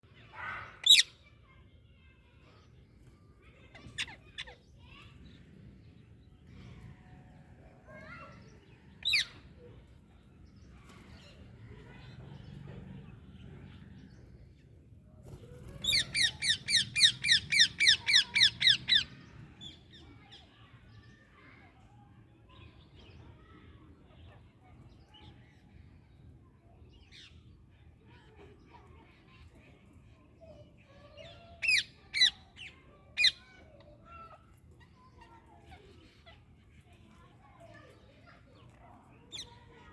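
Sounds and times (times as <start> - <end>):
faint chatter: 0.0 - 39.9.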